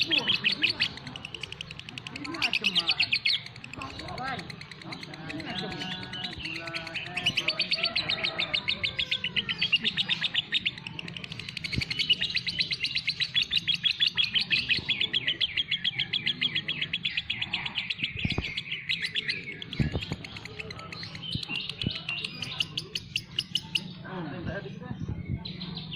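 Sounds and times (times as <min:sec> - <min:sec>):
songbird chirping rapidly: 0:00.0 - 0:25.9.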